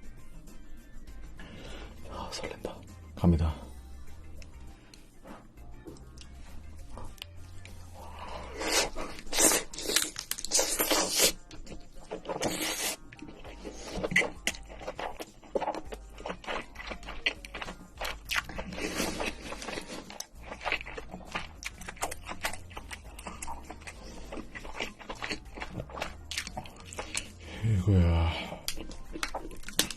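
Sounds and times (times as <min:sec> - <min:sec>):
crab eating crunching and chewing: 0:07.0 - 0:27.6, 0:28.4 - 0:29.9.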